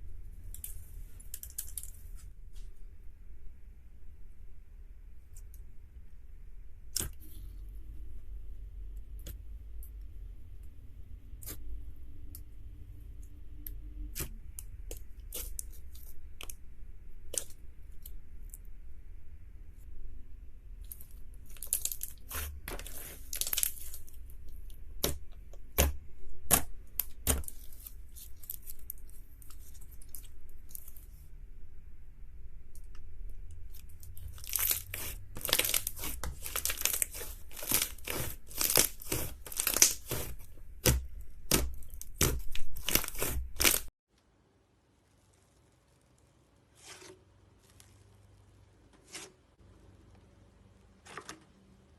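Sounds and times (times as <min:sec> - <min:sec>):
slime crackling and popping: 0:20.8 - 0:31.0, 0:33.7 - 0:43.9.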